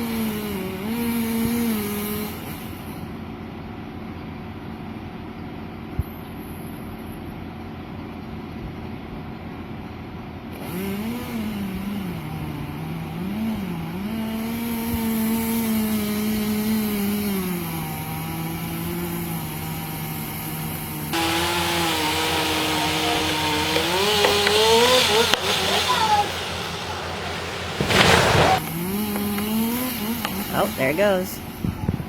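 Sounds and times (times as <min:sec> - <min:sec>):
engine running: 0:21.1 - 0:29.5.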